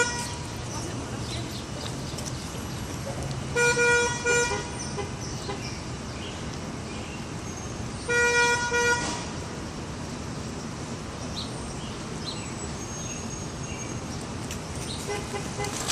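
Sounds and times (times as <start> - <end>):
city traffic noise: 0.0 - 15.9
car horn honking: 3.5 - 5.7, 8.1 - 9.4, 15.0 - 15.9.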